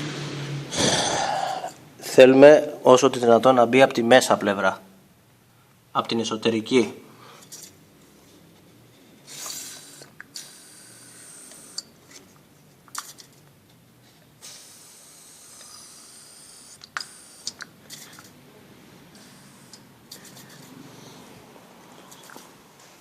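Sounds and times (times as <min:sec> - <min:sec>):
aerosol spray can hissing: 0:09.3 - 0:11.9, 0:14.4 - 0:18.3.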